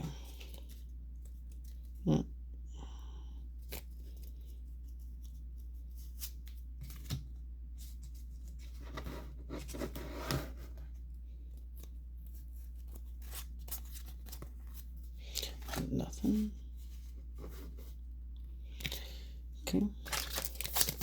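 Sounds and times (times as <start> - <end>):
low steady hum: 0.0 - 21.0
cards and foil wrappers rustling: 0.1 - 2.0, 11.4 - 16.5, 20.0 - 21.0.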